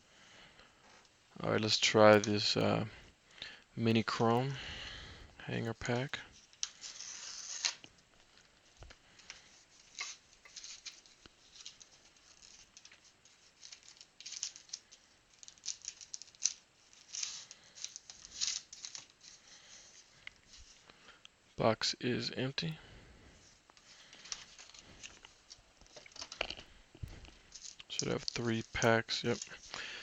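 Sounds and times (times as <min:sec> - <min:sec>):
card packaging rustling and crinkling: 0:05.8 - 0:20.9, 0:23.5 - 0:30.0.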